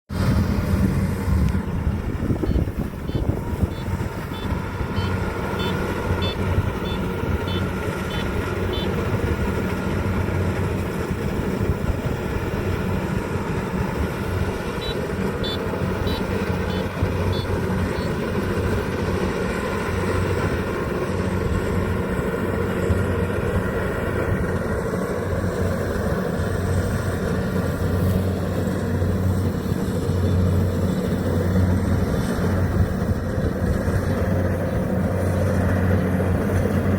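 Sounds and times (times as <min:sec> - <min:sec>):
harvester engine running: 0:00.1 - 0:36.9.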